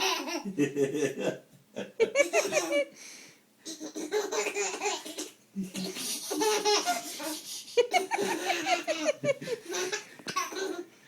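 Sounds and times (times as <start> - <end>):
baby laughing: 0.0 - 0.6, 2.1 - 2.9, 3.6 - 10.9.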